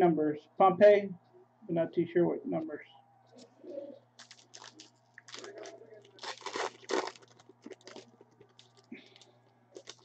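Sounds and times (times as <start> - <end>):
cards crinkling and rustling: 4.2 - 10.0.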